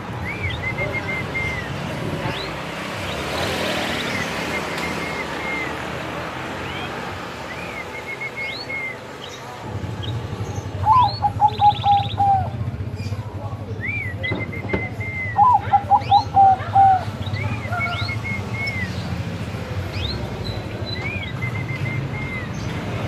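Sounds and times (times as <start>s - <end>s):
higher bird calls: 6.6s - 19.2s
dove cooing: 10.8s - 12.6s, 14.8s - 18.1s.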